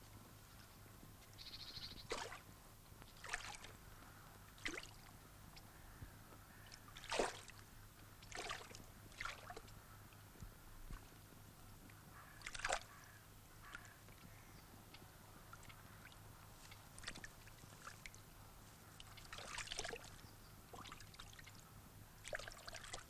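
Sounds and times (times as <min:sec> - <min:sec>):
splashes in shallow water: 0:02.0 - 0:02.5, 0:03.2 - 0:03.8, 0:04.5 - 0:05.2, 0:06.6 - 0:09.8, 0:12.4 - 0:13.0, 0:15.5 - 0:18.3, 0:18.9 - 0:21.6, 0:22.2 - 0:23.0.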